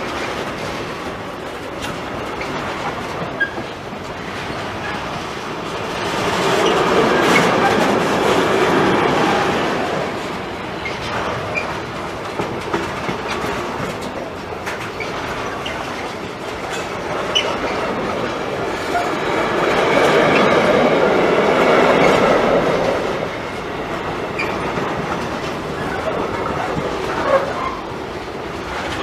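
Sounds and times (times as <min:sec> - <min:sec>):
train wheels clattering over rail joints: 0:00.0 - 0:29.0.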